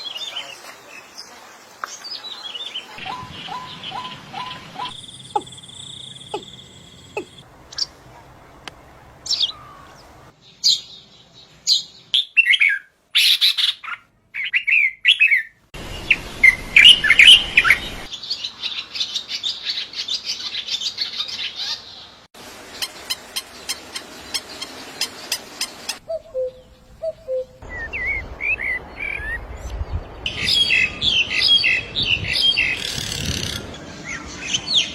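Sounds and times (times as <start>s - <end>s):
birds chirping and trilling: 1.9s - 8.0s, 9.2s - 34.9s.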